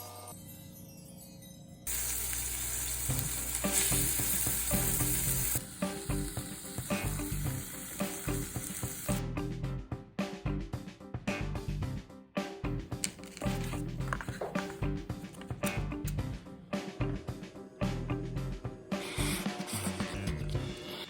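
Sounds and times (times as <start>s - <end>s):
food sizzling in frying pan: 1.9s - 9.2s
utensil clicking and knocking: 13.0s - 16.2s.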